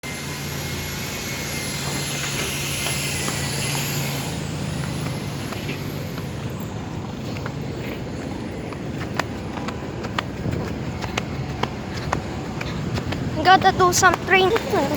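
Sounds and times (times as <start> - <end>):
high-pitched whine: 0.0 - 7.2
city traffic noise: 0.0 - 14.9
low engine hum: 0.0 - 14.9.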